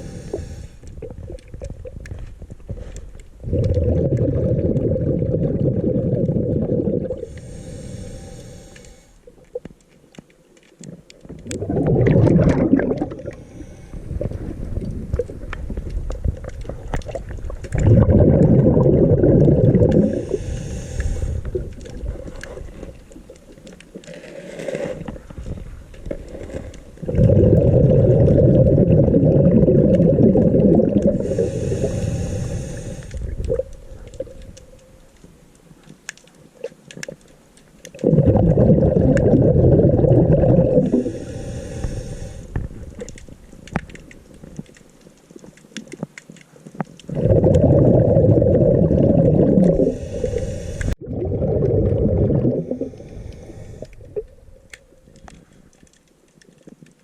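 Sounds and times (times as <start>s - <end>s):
regulator hiss: 0.0s - 0.8s, 7.3s - 9.2s, 31.2s - 33.2s, 40.8s - 42.6s, 49.8s - 51.0s
exhaled bubbles rumbling underwater: 0.0s - 8.2s, 10.9s - 24.1s, 24.8s - 35.2s, 37.8s - 44.8s, 47.0s - 55.4s.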